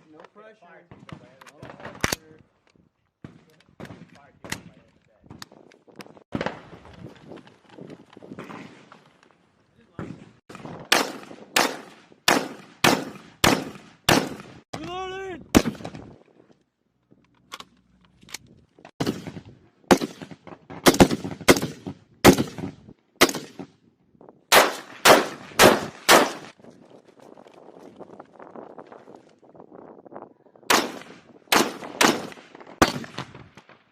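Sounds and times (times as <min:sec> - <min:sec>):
rifle shots: 0:10.5 - 0:14.7, 0:15.5 - 0:16.0, 0:19.0 - 0:23.7, 0:24.5 - 0:26.6, 0:30.7 - 0:33.8.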